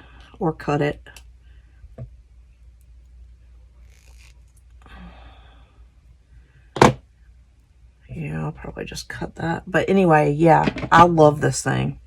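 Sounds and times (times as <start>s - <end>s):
breathy exhale: 4.8s - 5.8s.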